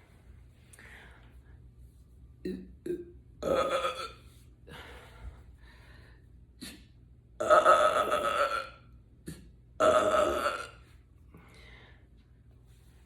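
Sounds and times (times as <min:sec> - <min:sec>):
woman burping: 0:02.4 - 0:04.2, 0:07.4 - 0:10.8.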